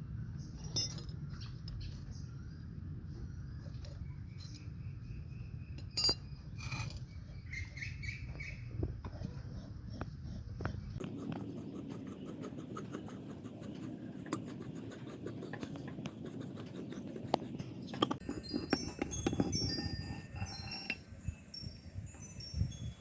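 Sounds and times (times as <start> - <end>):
metal pieces knocking and ringing: 0.6 - 1.8, 5.8 - 7.0
steady scraping: 6.6 - 21.1.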